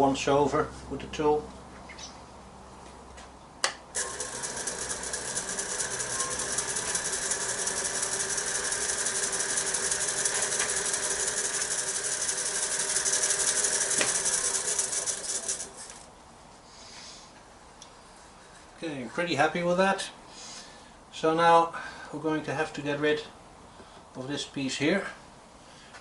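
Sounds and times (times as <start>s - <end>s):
lathe whine: 4.0s - 16.1s
tool scraping spinning wood: 4.0s - 16.1s.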